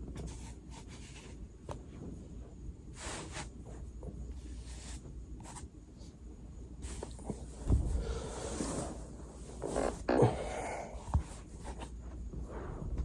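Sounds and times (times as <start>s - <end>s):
body rustling on foam roller: 6.8s - 10.4s
dull thump: 7.6s - 8.2s.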